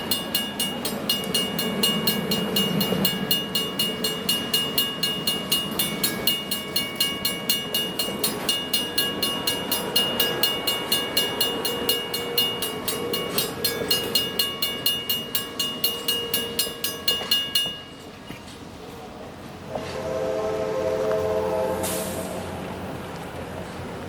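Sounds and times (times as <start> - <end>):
crossing warning bell ringing: 0.0 - 18.7
passing train rumble: 0.0 - 24.0.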